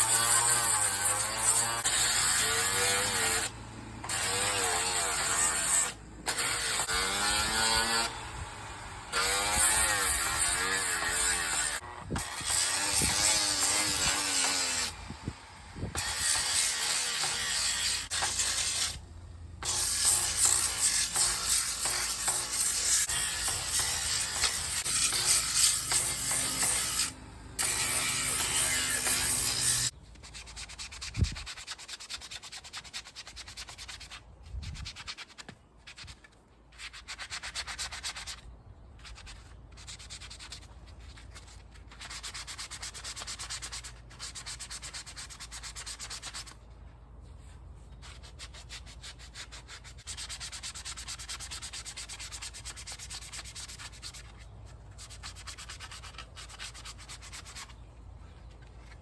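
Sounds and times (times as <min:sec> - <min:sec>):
sanding plastic rasping: 0:19.6 - 0:46.6, 0:48.0 - 0:57.9.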